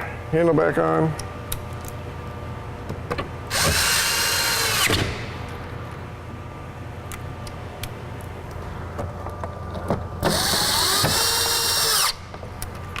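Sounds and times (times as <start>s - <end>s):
power drill motor whine: 3.5s - 5.1s, 10.2s - 12.2s.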